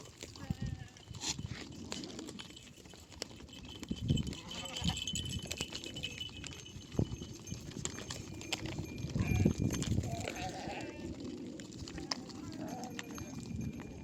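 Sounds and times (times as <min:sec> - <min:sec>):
sheep bleating: 0:09.2 - 0:11.2, 0:12.0 - 0:13.2.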